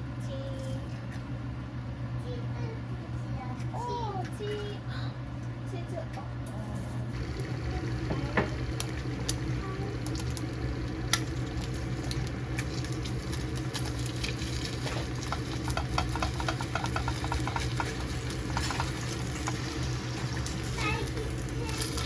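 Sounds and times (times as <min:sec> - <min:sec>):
steady low hum: 0:00.0 - 0:22.0
egg sizzling in a pan: 0:07.1 - 0:22.0
spatula scraping a pan: 0:16.0 - 0:20.3.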